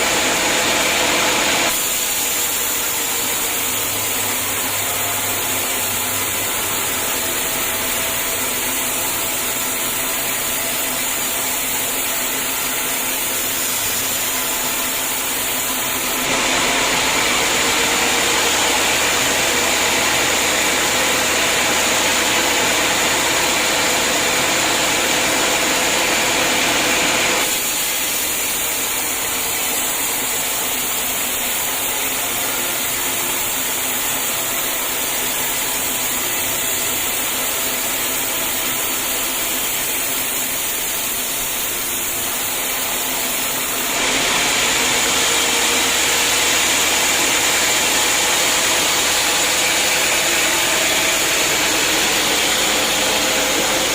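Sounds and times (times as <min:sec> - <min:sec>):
saw cutting into log: 0:00.0 - 0:53.9
sawmill running: 0:00.0 - 0:53.9.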